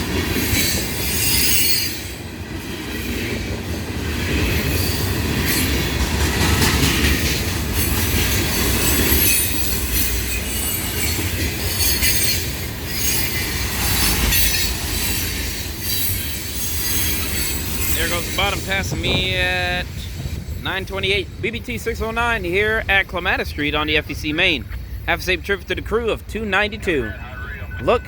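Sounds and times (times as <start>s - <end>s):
steel wheels rumbling on rails: 0.0s - 27.0s
high wheel squeal and hiss: 1.1s - 2.1s.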